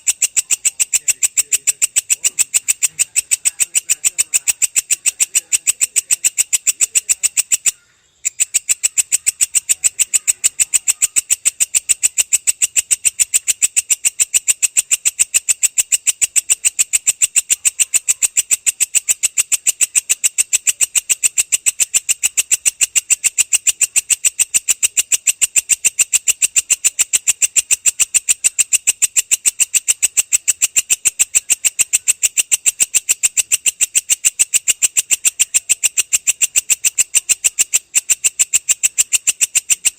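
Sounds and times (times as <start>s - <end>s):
insect chirping rapidly: 0.0s - 39.9s.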